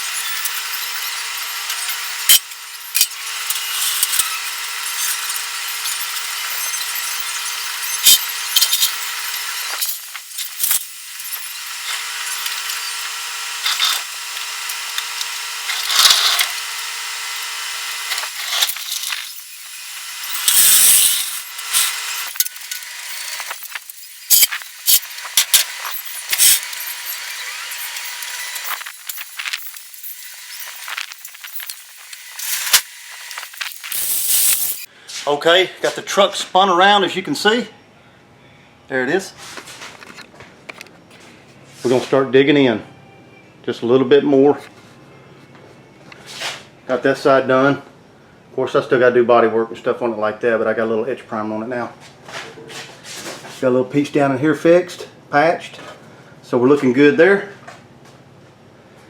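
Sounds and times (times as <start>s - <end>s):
power tool whining: 0.0s - 34.9s
loud burst of hiss: 20.4s - 22.3s, 32.3s - 34.9s.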